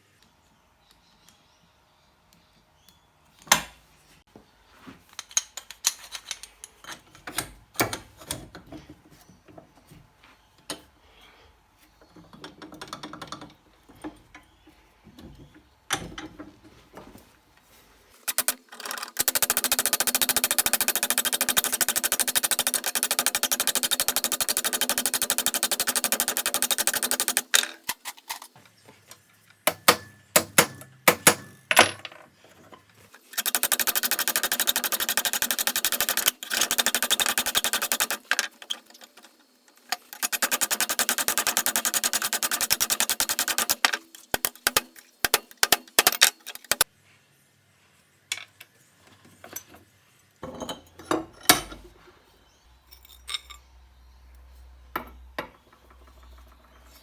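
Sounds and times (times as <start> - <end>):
rapid mechanical rattling: 18.2 - 27.6, 33.3 - 46.8
metal clinks and knocks: 52.8 - 53.7.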